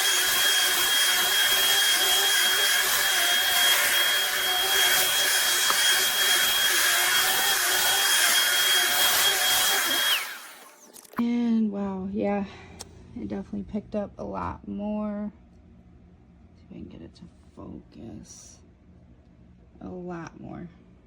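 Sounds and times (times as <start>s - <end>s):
vacuum cleaner motor whine: 0.0s - 11.2s.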